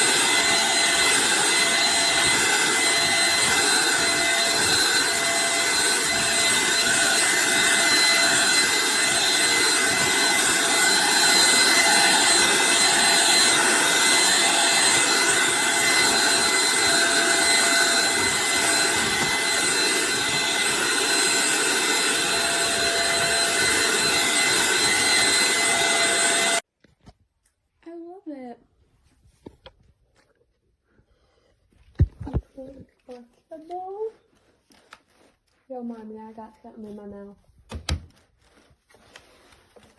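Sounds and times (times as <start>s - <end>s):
stick vacuum cleaner running: 0.0s - 26.6s.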